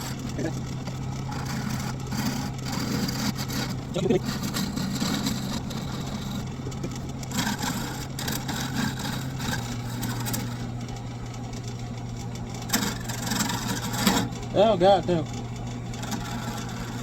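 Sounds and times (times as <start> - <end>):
turning tool hissing on wood: 0.0 - 6.6
wood lathe motor hum: 0.0 - 17.0.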